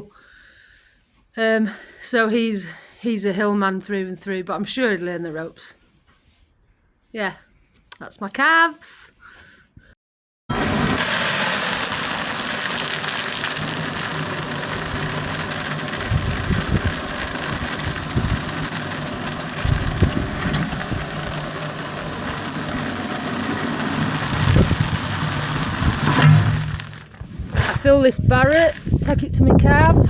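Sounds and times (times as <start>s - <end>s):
crusher machine humming: 10.5s - 27.2s.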